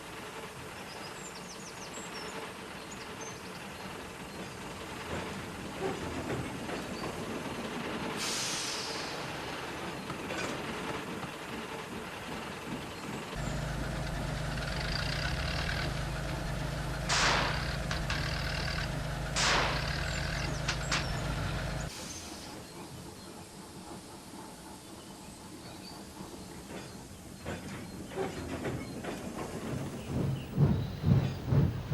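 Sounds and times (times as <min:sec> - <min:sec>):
vehicle engine running: 0:13.4 - 0:21.9
air hissing: 0:13.4 - 0:22.6.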